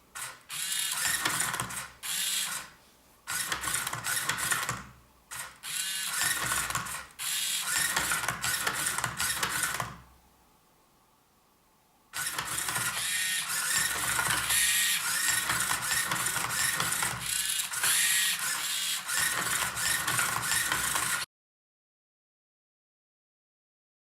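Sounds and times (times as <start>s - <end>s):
servo motors whirring: 5.3s - 9.8s, 12.2s - 21.2s.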